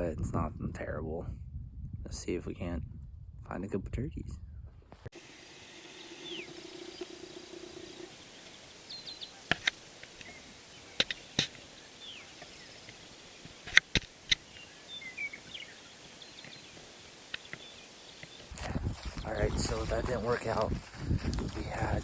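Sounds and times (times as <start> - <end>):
small birds chirping: 5.3 - 22.0.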